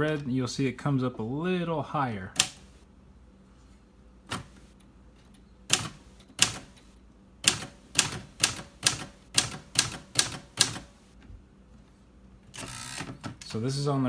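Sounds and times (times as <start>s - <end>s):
manual typewriter key strikes: 5.7s - 6.8s, 7.4s - 10.9s.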